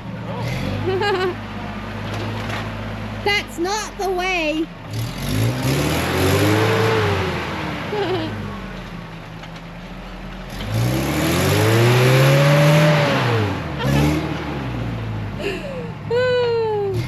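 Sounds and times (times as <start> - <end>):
engine revving hard: 4.9 - 8.4, 10.5 - 15.2.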